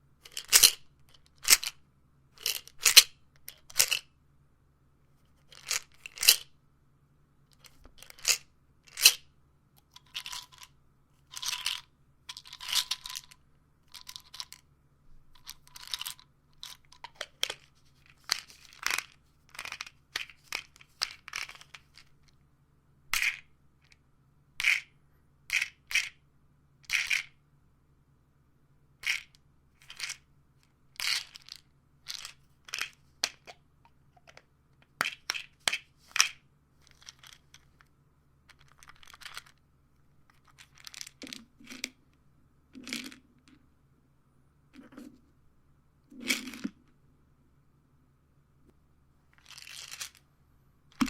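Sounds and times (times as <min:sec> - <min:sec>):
pills rattling in bottle: 0:00.3 - 0:01.8, 0:02.4 - 0:04.1, 0:05.4 - 0:06.4, 0:07.6 - 0:09.2, 0:09.9 - 0:14.6, 0:15.4 - 0:22.2, 0:29.0 - 0:30.2, 0:31.0 - 0:33.6, 0:34.3 - 0:37.7, 0:38.5 - 0:39.6, 0:40.3 - 0:42.0, 0:42.8 - 0:43.2, 0:49.4 - 0:50.2.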